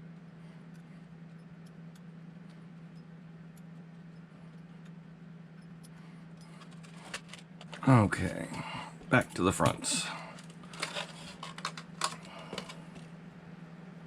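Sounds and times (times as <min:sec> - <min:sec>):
steady low hum: 0:00.0 - 0:14.0
small parts and tools clicking: 0:00.6 - 0:07.8, 0:10.3 - 0:13.1.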